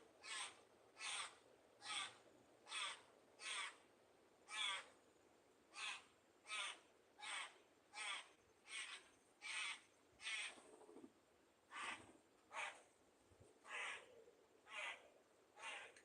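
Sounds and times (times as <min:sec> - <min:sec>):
bird giving harsh caw-like calls: 0:00.2 - 0:03.8, 0:04.5 - 0:04.9, 0:05.7 - 0:10.6, 0:11.7 - 0:12.8, 0:13.6 - 0:16.0.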